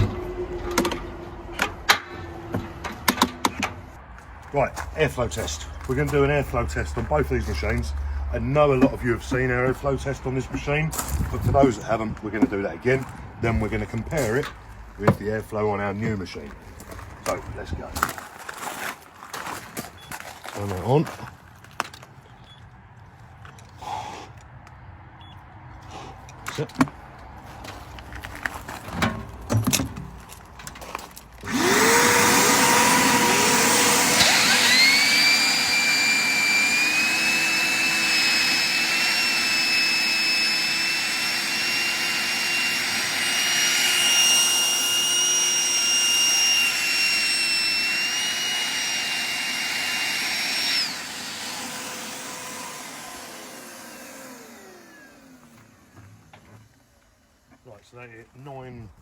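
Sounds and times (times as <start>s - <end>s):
vacuum motors whining: 31.4s - 57.6s.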